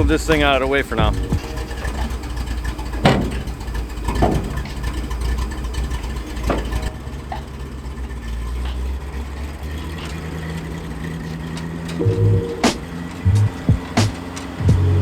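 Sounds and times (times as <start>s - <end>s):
sharp metal clanks: 0.0s - 7.5s
engine running at low revs: 0.0s - 15.0s.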